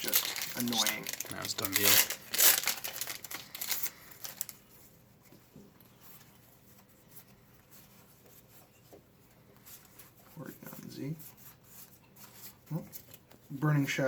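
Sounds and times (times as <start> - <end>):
foil wrapper crinkling: 0.0 - 4.6
trading cards handling: 0.0 - 4.7.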